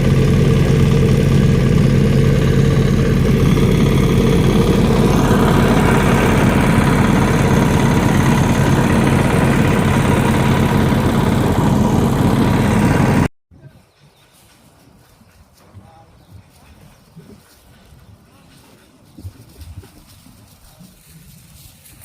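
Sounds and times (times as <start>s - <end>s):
construction machinery engine running: 0.0s - 13.3s.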